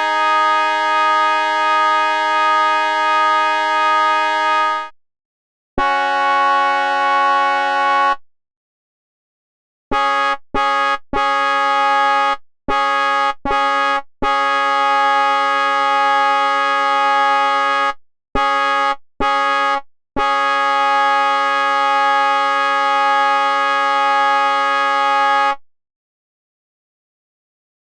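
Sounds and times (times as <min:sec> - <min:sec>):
locomotive horn blasts: 0:05.8 - 0:08.2, 0:09.9 - 0:14.6, 0:18.4 - 0:25.6.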